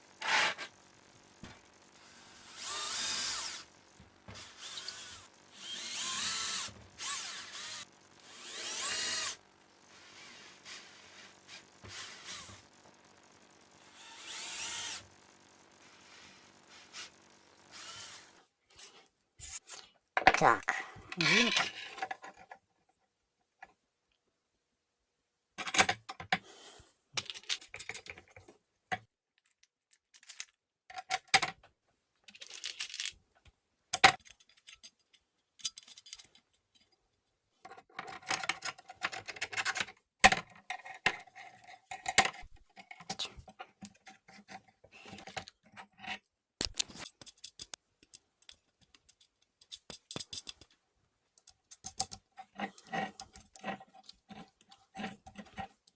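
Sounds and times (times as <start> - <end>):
small metal parts clinking: 29.4 - 31.1, 32.3 - 33.2, 34.2 - 36.9, 46.6 - 50.8.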